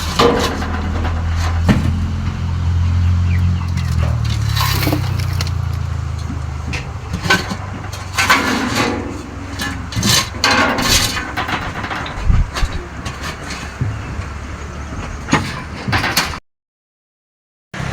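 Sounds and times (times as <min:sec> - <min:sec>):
scrapes and knocks: 0:00.0 - 0:02.6, 0:03.4 - 0:14.4
low engine hum: 0:00.0 - 0:16.0.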